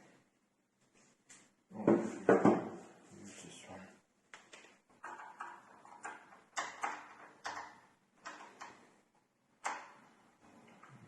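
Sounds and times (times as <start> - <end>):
lock parts clicking and knocking: 5.0 - 8.9, 9.6 - 10.2.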